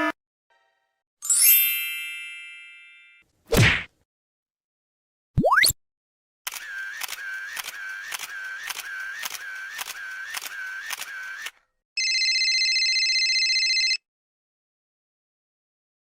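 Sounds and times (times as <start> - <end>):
sharp mechanical clicks: 6.5 - 11.6
whirring tone: 6.5 - 11.6
harsh electronic buzz: 6.6 - 11.5.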